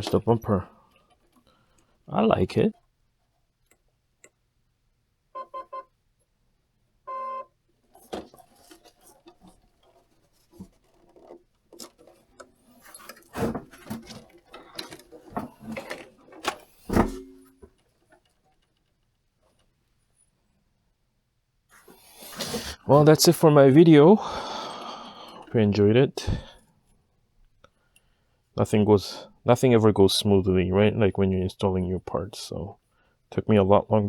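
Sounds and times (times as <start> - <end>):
clicks knocks and scrapes: 8.0 - 19.8.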